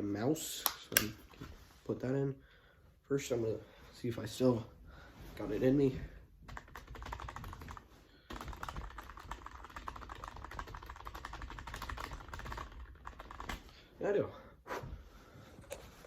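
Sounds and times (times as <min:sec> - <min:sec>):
fast typing on keyboard: 0:06.5 - 0:13.8.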